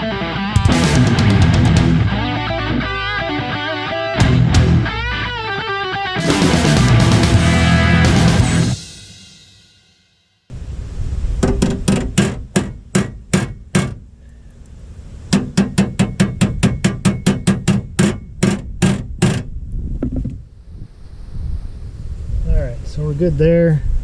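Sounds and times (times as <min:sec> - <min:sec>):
hammer striking sheet steel: 0:11.4 - 0:14.0, 0:15.3 - 0:19.5.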